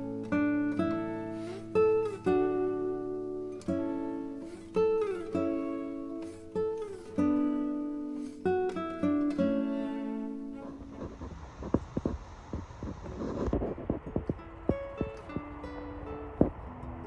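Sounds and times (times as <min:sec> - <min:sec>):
acoustic guitar plucked notes: 0:00.0 - 0:12.1, 0:13.2 - 0:17.0
rushing noise: 0:10.6 - 0:17.0.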